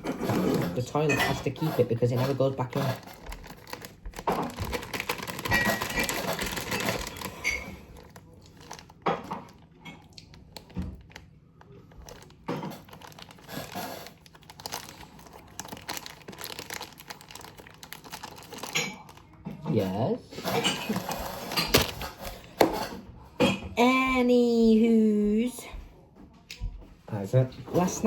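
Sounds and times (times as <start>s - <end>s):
snack packaging crinkling: 1.6s - 19.4s, 20.4s - 22.6s.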